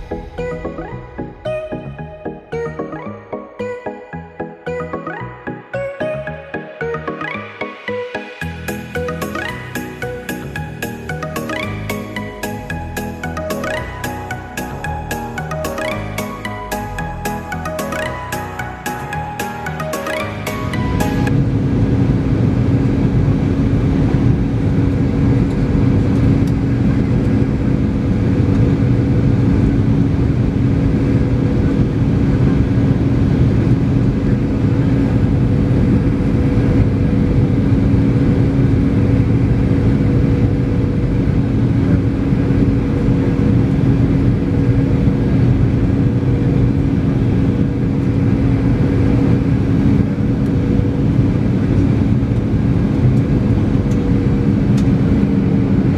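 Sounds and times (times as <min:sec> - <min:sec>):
jet engine hum: 0:00.0 - 0:01.5.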